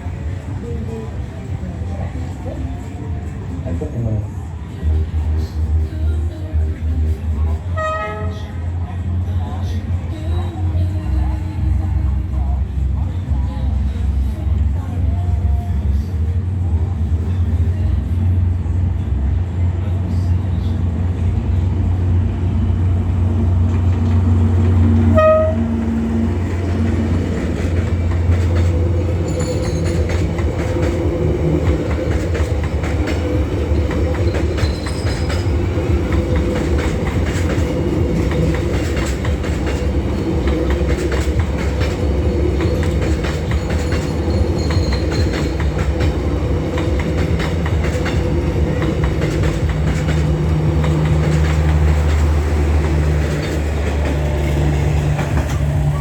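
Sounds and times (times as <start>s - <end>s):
train rumbling past: 0.0s - 56.0s
train horn: 7.7s - 8.6s, 25.0s - 26.0s
wheels clacking over rail joints: 22.8s - 56.0s.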